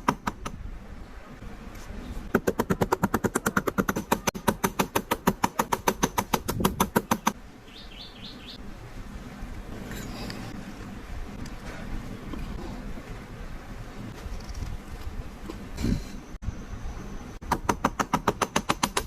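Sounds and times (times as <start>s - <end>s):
rapid sharp knocks: 17.5s - 19.0s.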